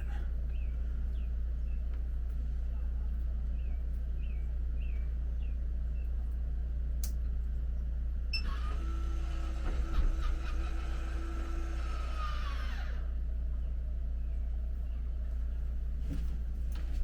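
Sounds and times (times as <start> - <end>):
steady low hum: 0.0 - 17.0
small electric motor whirring: 8.4 - 13.1.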